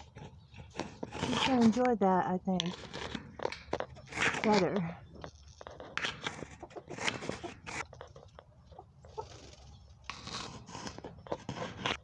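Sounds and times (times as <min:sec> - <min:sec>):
pecking scratching and tapping: 0:00.0 - 0:12.0
soft bird calls: 0:03.4 - 0:10.1.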